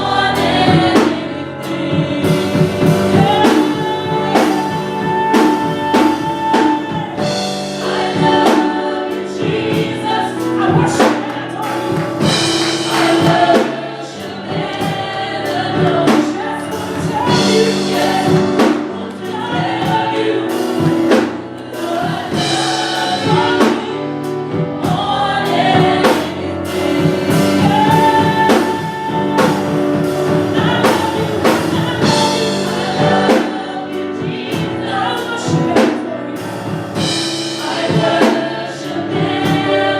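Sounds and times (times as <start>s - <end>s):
band playing: 0.0s - 39.9s
drum kit beat: 0.0s - 39.9s
gospel singers singing: 0.0s - 39.9s.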